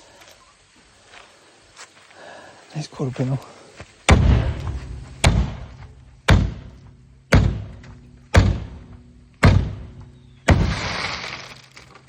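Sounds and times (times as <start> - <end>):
hammer striking car panel: 5.2 - 10.7.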